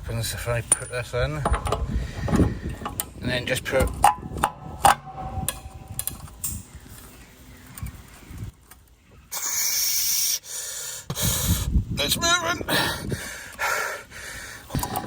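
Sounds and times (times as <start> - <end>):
metal clinks and knocks: 0.7 - 3.1, 3.8 - 6.8.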